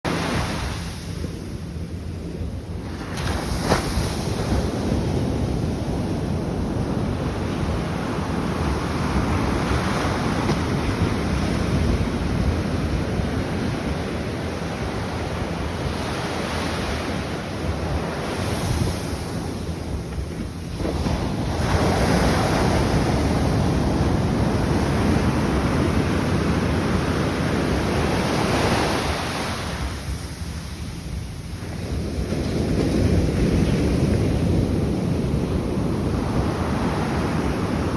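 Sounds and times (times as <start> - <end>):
wind buffeting microphone: 0.1 - 37.9
ocean waves breaking: 2.8 - 30.7.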